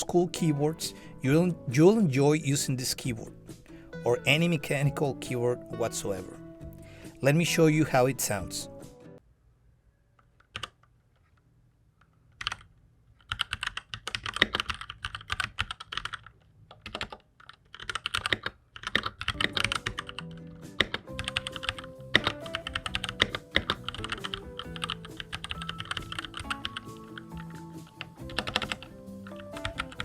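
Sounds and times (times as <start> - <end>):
background music: 0.0 - 9.2, 19.4 - 30.0
mechanical keyboard typing: 12.4 - 30.0.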